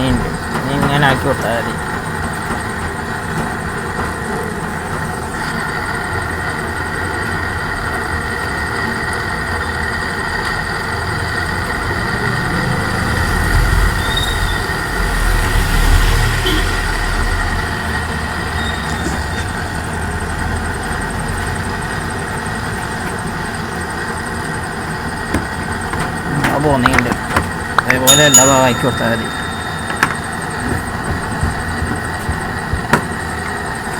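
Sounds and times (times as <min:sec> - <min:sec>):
cutting torch flame rumbling: 0:10.3 - 0:18.6.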